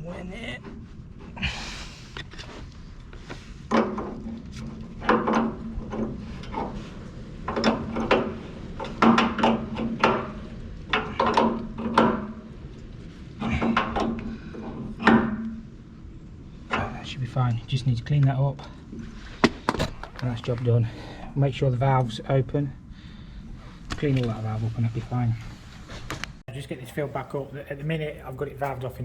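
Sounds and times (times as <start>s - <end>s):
spanner clunking on metal pipe fitting: 3.7s - 12.5s.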